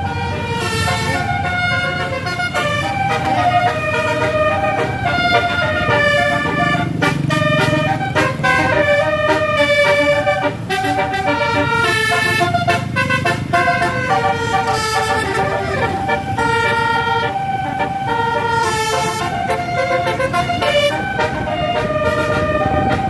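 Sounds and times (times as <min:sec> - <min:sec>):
siren-like pitch sweep: 0:00.0 - 0:12.6, 0:13.5 - 0:23.0
bus engines rumbling: 0:00.0 - 0:23.0
bus horns playing melody: 0:00.0 - 0:23.0.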